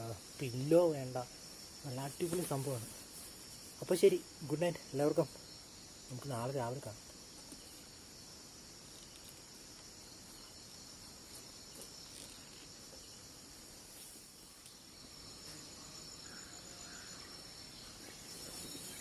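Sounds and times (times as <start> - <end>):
crickets chirring: 0.0 - 19.0
fast pulsing insect trill: 0.0 - 19.0.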